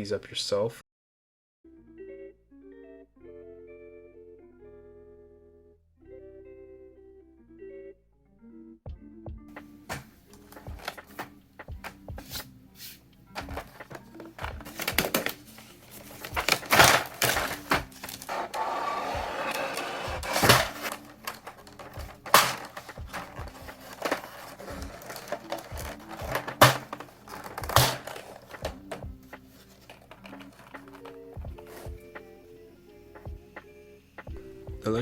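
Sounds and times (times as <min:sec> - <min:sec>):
quiet lo-fi music: 0:01.7 - 0:35.0
packaging rustle: 0:13.4 - 0:29.0, 0:29.6 - 0:31.9.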